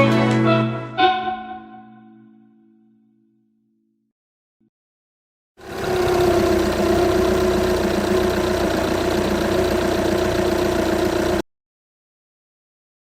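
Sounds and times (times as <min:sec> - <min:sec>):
diesel engine idling: 0:05.6 - 0:11.4.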